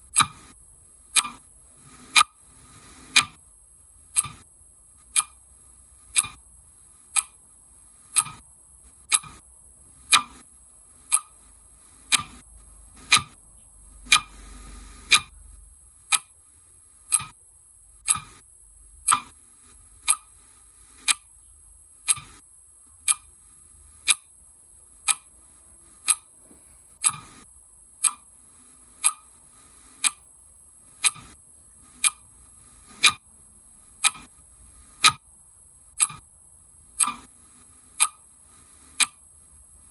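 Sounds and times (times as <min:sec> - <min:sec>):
faint high hiss: 0:00.0 - 0:39.9
clock ticking: 0:00.1 - 0:00.5, 0:01.2 - 0:01.4, 0:03.1 - 0:03.4, 0:04.1 - 0:04.4, 0:05.1 - 0:05.4, 0:06.1 - 0:06.4, 0:07.1 - 0:07.4, 0:08.1 - 0:08.4, 0:09.1 - 0:09.4, 0:10.1 - 0:10.4, 0:11.1 - 0:11.5, 0:12.1 - 0:12.4, 0:14.0 - 0:14.4, 0:15.1 - 0:15.4, 0:16.1 - 0:16.4, 0:17.1 - 0:17.4, 0:18.0 - 0:18.4, 0:19.0 - 0:19.4, 0:20.0 - 0:20.4, 0:21.0 - 0:21.3, 0:22.0 - 0:22.4, 0:23.0 - 0:23.3, 0:24.0 - 0:24.3, 0:25.0 - 0:25.3, 0:26.0 - 0:27.4, 0:28.0 - 0:28.3, 0:29.0 - 0:29.4, 0:30.0 - 0:30.4, 0:31.0 - 0:31.4, 0:32.0 - 0:32.3, 0:34.0 - 0:34.3, 0:36.0 - 0:36.2, 0:37.0 - 0:37.3, 0:38.0 - 0:38.2, 0:39.0 - 0:39.2.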